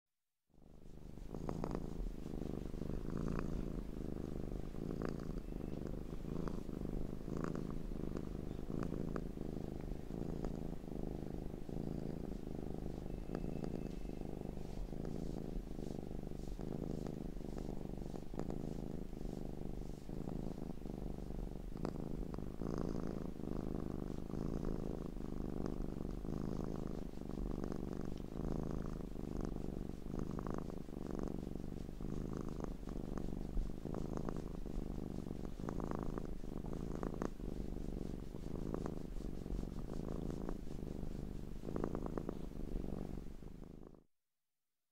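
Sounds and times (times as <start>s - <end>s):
cat purring: 0.5s - 44.1s.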